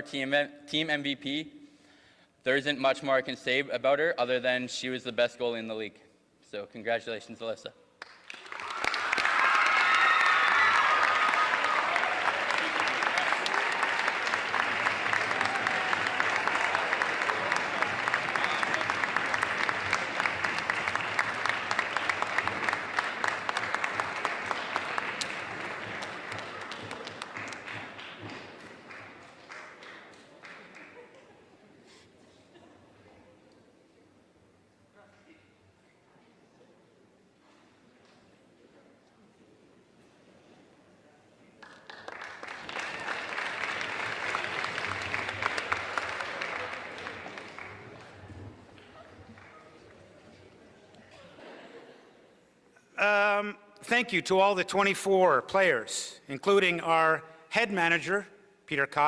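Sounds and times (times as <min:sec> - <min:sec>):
audience applauding: 0:08.0 - 0:31.4, 0:41.6 - 0:50.7.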